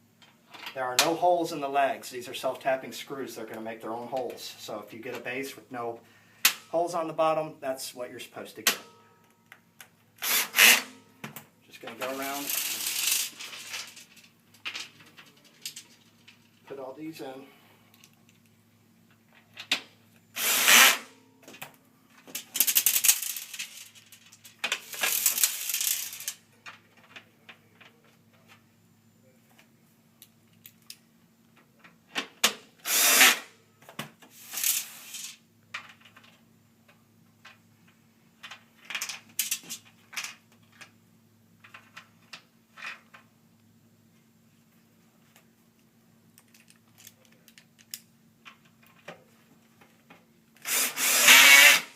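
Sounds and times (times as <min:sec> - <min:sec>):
drill driving screws into metal: 0:10.2 - 0:11.0, 0:20.4 - 0:21.1, 0:32.8 - 0:33.5, 0:50.6 - 0:51.9.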